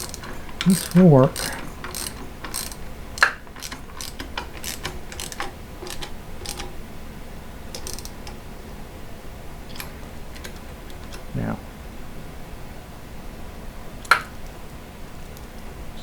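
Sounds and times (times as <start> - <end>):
socket ratchet clicking: 0.0 - 6.8, 7.7 - 8.4.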